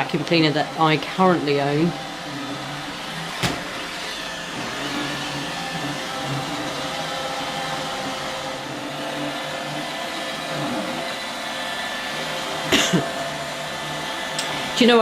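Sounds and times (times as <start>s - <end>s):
robot vacuum humming: 0.0s - 15.0s.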